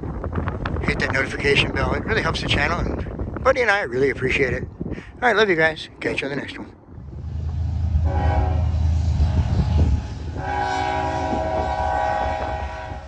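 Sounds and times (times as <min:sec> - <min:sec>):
low rumble: 0:06.8 - 0:13.0
locomotive air horn blasts: 0:07.9 - 0:13.0.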